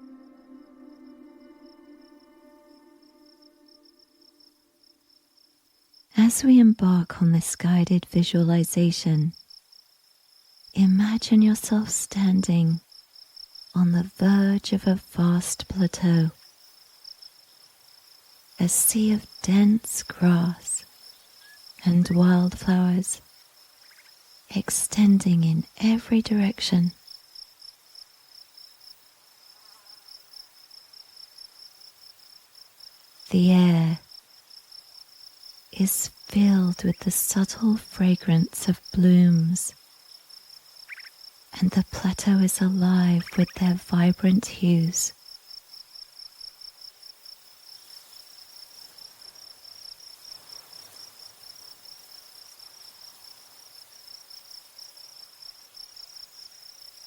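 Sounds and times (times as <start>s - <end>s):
crickets chirping: 0.0s - 7.4s, 8.8s - 14.8s, 15.6s - 57.0s
faint hiss: 45.1s - 57.0s.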